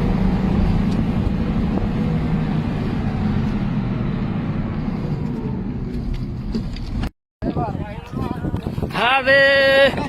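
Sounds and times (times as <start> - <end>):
vehicle engine humming: 0.0 - 7.1
road and wind noise: 0.0 - 10.0.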